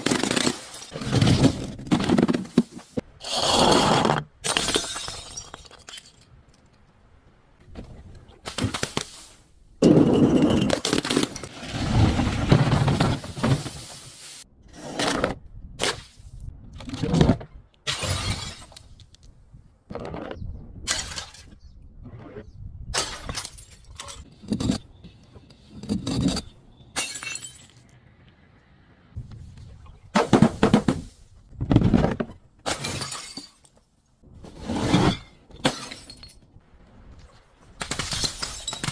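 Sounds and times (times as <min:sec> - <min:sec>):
glass bottles breaking: 0:04.4 - 0:06.2, 0:23.0 - 0:24.3, 0:27.0 - 0:27.9, 0:32.7 - 0:33.8, 0:35.6 - 0:36.4, 0:37.9 - 0:38.9.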